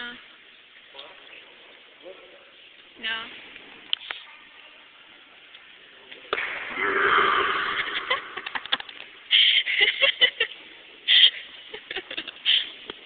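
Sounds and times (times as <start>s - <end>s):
long echoing burp: 6.6s - 8.6s.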